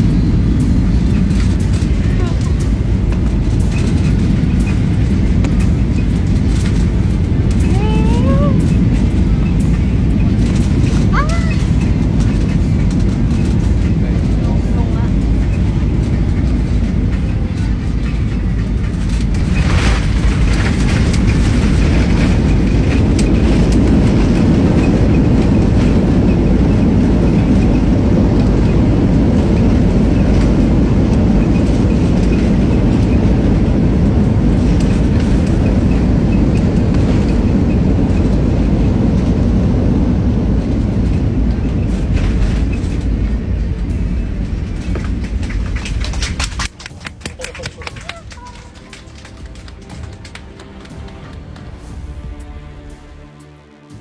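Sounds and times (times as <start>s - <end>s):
airliner engine rumble: 0.0s - 54.0s.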